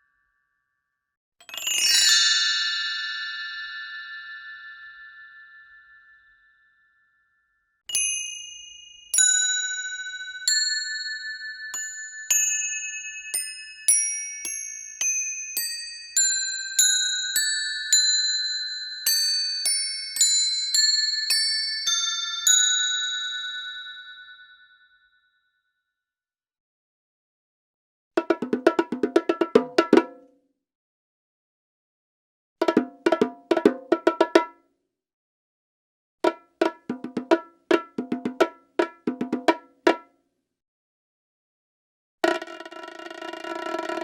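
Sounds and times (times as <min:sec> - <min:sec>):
glockenspiel-like metallic chimes: 0:01.4 - 0:25.4.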